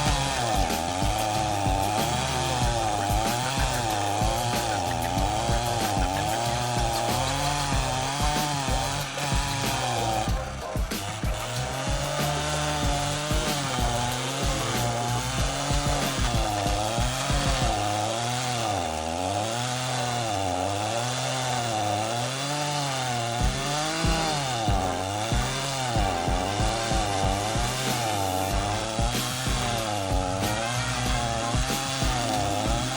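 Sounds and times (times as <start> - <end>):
chainsaw grinding tree stump: 0.0 - 32.9.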